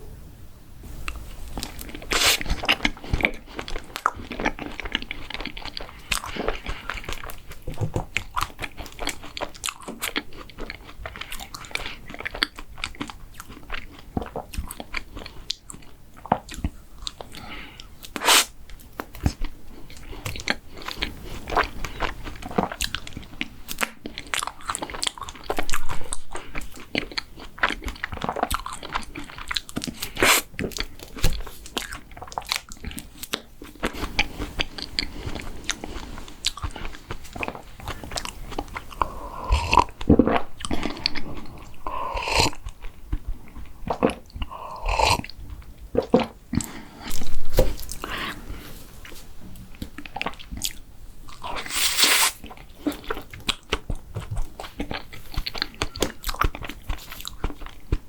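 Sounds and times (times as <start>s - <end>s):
person chewing crunchy food: 1.1s - 58.0s.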